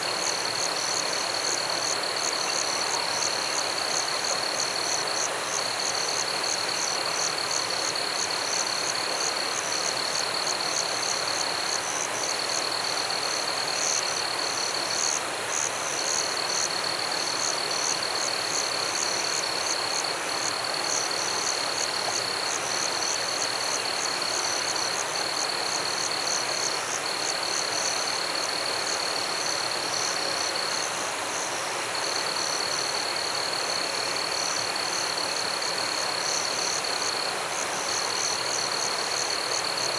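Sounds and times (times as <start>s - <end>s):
constant even hiss: 0.0s - 39.9s
frogs and insects trilling: 0.0s - 39.9s.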